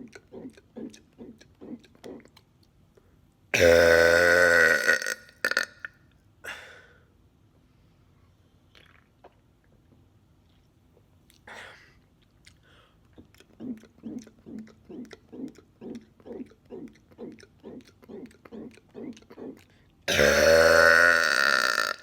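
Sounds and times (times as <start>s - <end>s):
quick gulps: 0.0s - 2.6s, 12.4s - 20.2s
man burping: 3.6s - 5.9s, 13.4s - 22.0s.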